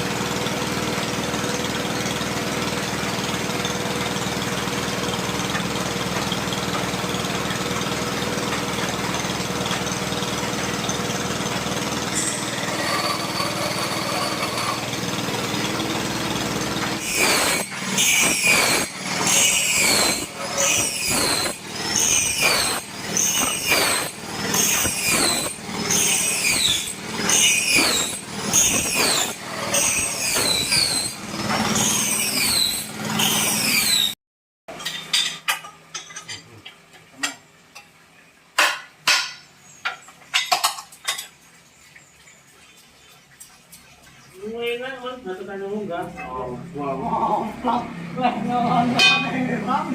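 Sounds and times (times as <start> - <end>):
small engine running: 0.0 - 34.2
metal parts squeaking: 17.0 - 34.2.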